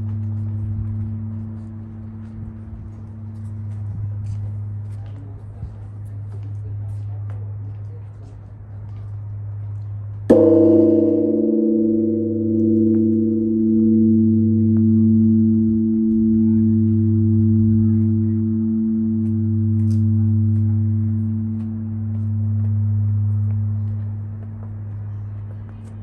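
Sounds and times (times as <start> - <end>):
deep hum: 0.0 - 6.5, 9.9 - 26.0
large bell ringing: 10.3 - 26.0.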